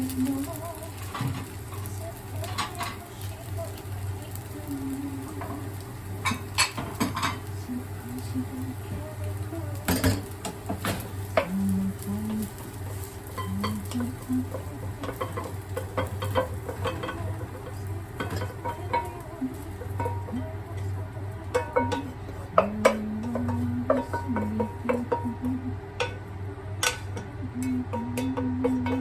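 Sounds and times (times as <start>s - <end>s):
steady low hum: 0.0s - 29.0s
utensil scraping a pan: 12.4s - 29.0s.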